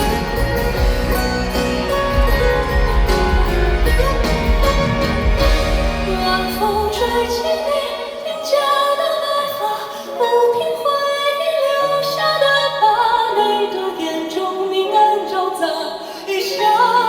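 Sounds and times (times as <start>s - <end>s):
live band playing: 0.0s - 8.6s.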